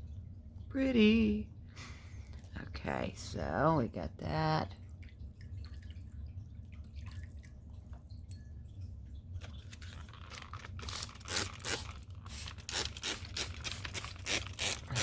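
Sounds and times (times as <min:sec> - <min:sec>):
rustling and crinkling: 0:09.3 - 0:15.0.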